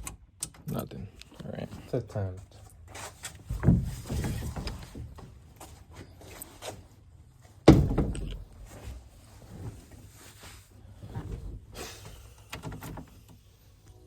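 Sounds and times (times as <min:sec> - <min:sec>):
dull clunks: 0:03.4 - 0:05.7, 0:07.6 - 0:09.0.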